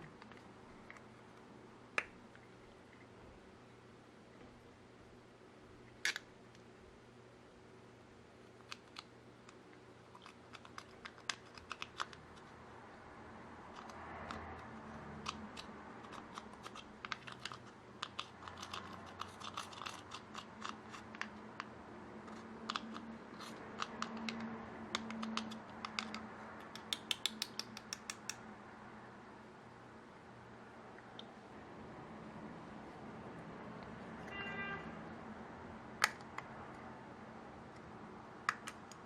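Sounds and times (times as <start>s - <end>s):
faint steady hum: 0.0s - 39.0s
sharp clicks and pops: 23.8s - 28.4s.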